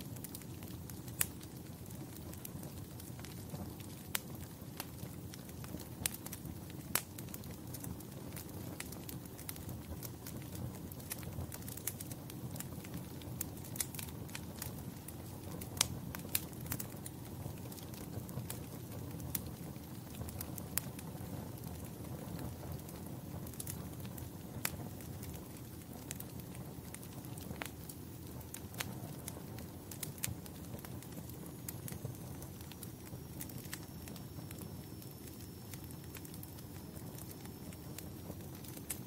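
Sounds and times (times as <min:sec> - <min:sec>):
fire crackling and popping: 0:00.0 - 0:39.0
low rumble of flames: 0:00.0 - 0:39.0.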